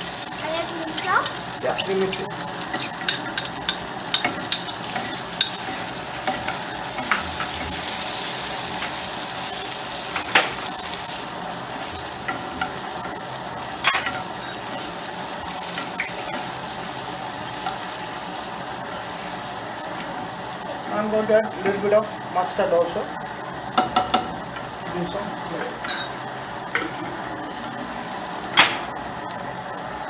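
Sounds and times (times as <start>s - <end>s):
food sizzling in hot oil: 0.0s - 30.0s
utensil clicking against pan: 0.6s - 7.9s, 23.7s - 24.8s.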